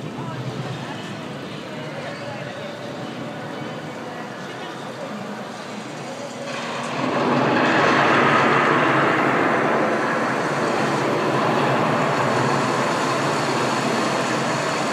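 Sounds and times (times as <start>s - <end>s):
heavy rain pouring: 5.8s - 14.9s.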